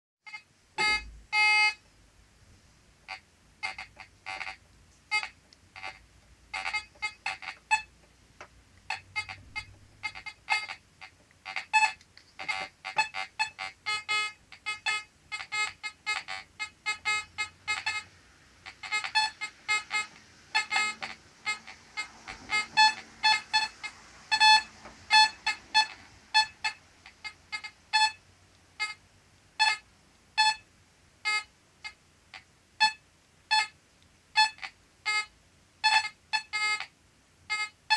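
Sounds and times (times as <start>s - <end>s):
metal detector beeps: 0.3s - 1.8s, 3.1s - 7.9s, 8.9s - 10.8s, 11.5s - 28.2s, 28.8s - 29.0s, 29.6s - 29.8s, 30.4s - 30.6s, 31.2s - 32.0s, 32.8s - 33.8s, 34.4s - 36.9s, 37.5s - 37.8s.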